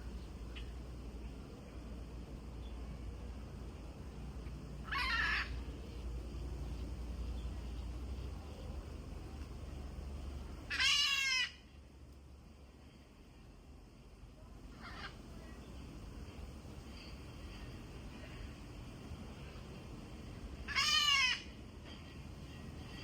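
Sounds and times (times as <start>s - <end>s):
low steady rumble: 0.0s - 23.0s
macaw squawking: 4.8s - 5.7s, 10.7s - 11.6s, 20.7s - 21.6s.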